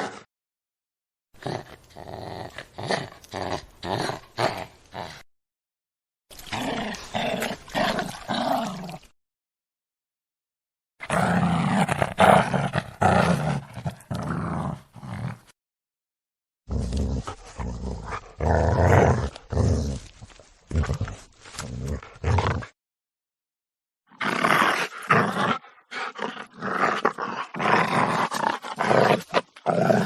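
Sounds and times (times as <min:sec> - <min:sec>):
dog growling and barking: 0:06.5 - 0:09.1, 0:11.0 - 0:15.6, 0:16.7 - 0:20.1, 0:24.1 - 0:30.0.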